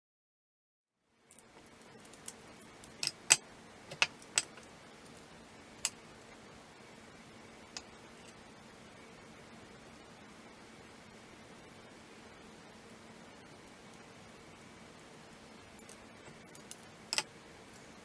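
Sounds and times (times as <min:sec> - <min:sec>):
faint steady hum: 0:01.0 - 0:18.0
small metal parts clicking: 0:01.3 - 0:06.3, 0:15.7 - 0:17.3.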